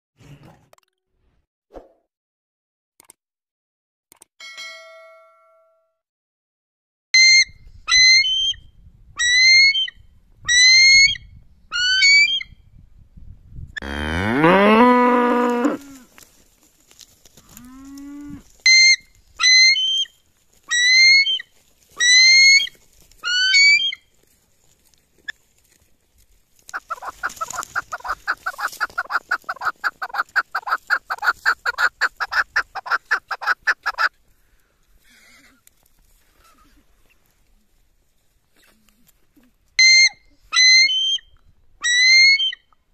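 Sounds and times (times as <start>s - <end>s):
cow mooing: 13.8s - 16.0s
partridge rattling calls: 26.7s - 34.1s.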